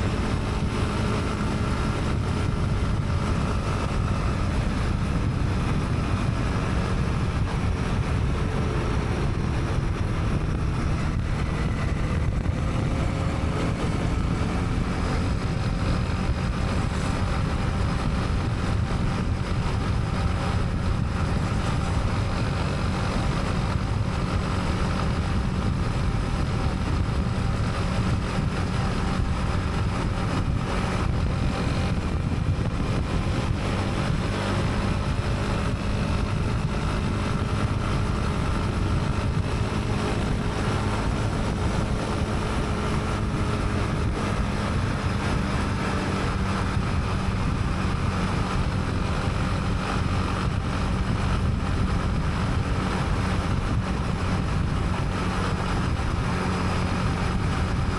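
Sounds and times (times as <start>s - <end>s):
motorcycle engine running: 0.0s - 57.9s
wind and road noise: 0.0s - 57.9s.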